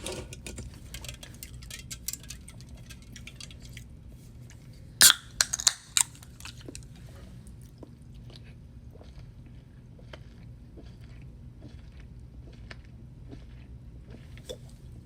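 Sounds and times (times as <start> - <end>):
chewing with wet mouth clicks: 5.0 - 6.9, 7.6 - 14.8.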